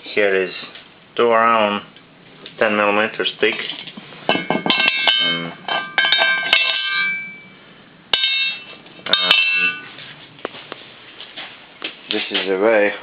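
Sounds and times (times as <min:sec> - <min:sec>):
steel plate clanging: 0:03.4 - 0:10.0.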